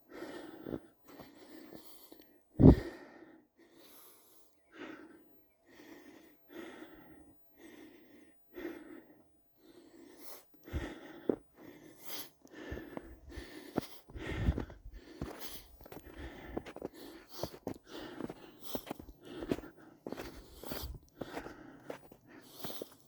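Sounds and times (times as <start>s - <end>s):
footsteps in snow: 12.1s - 23.0s.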